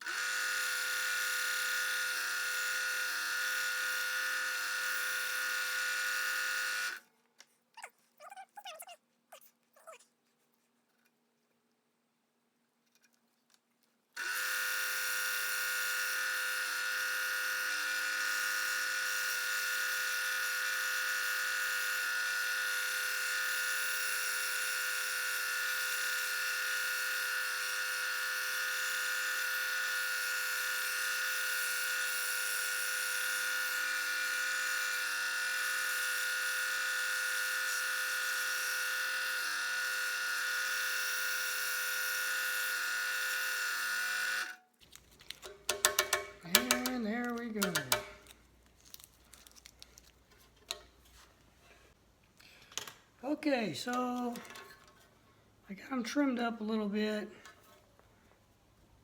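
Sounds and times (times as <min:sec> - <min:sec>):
scroll saw cutting plywood: 0:00.0 - 0:07.0, 0:14.2 - 0:44.6.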